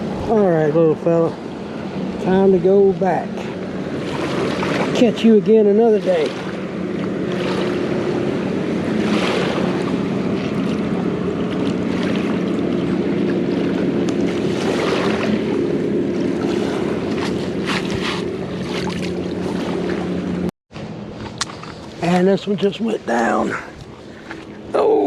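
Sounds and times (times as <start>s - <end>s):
rushing water: 0.0s - 20.5s, 21.2s - 25.0s
rushing wind: 0.0s - 25.0s
low hum: 5.6s - 25.0s.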